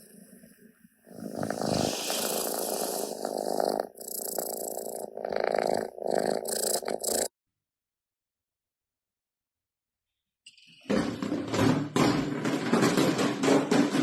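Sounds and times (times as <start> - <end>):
cat purring loudly: 1.0 - 7.3.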